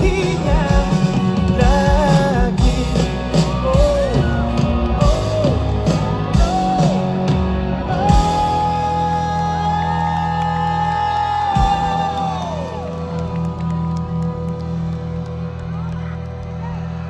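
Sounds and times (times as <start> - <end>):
man singing: 0.0 - 12.5
live rock band playing: 0.0 - 15.7.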